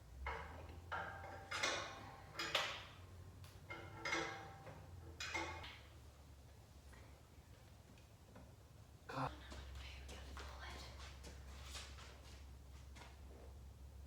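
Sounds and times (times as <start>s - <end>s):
wrench clinking on metal: 0.2s - 3.0s, 3.7s - 5.8s.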